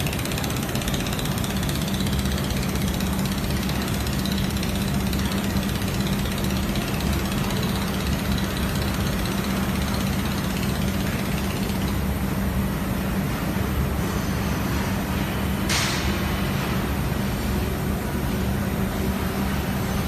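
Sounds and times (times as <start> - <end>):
machine hum: 0.0 - 20.0.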